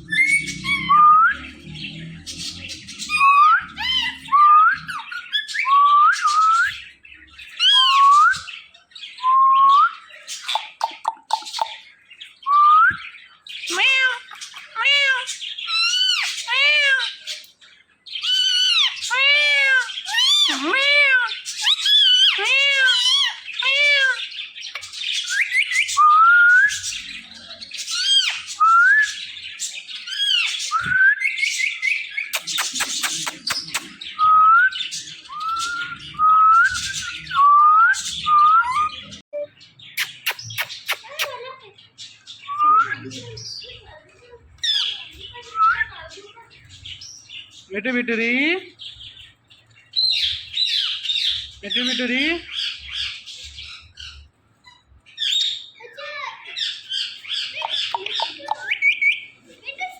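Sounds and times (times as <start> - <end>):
parakeet squawking: 0.0 - 6.8, 7.4 - 8.2, 13.6 - 17.5, 18.2 - 26.0, 26.7 - 28.5, 31.4 - 34.2, 34.8 - 41.7, 50.0 - 59.9
parakeet chirping and chattering: 0.0 - 9.0, 10.0 - 59.9.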